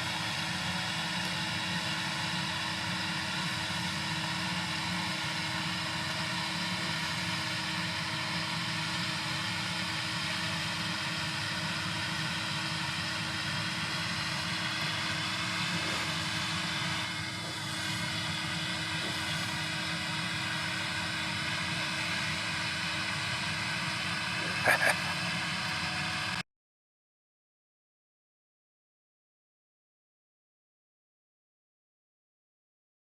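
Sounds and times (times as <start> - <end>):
combine harvester humming: 0.0 - 26.4.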